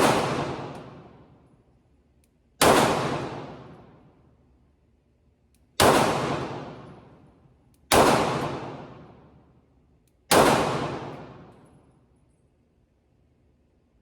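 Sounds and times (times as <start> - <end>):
pistol shots with echo: 0.0 - 1.4, 2.6 - 4.1, 5.8 - 9.4, 10.3 - 11.7.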